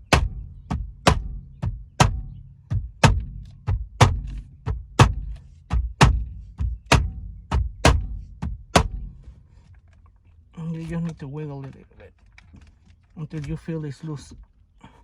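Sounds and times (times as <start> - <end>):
steering wheel being struck: 0.0 - 9.4.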